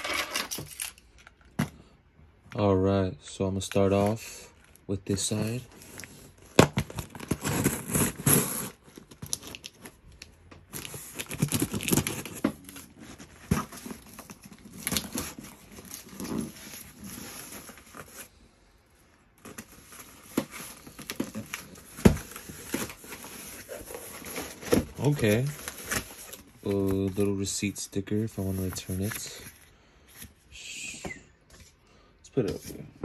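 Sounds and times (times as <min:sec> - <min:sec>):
packaging crinkling and tearing: 0:05.5 - 0:18.2.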